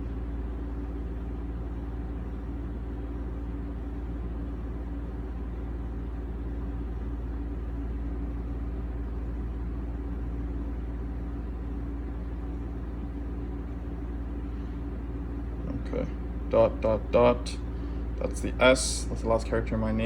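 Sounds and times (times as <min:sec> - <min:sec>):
low background hum: 0:00.0 - 0:20.0.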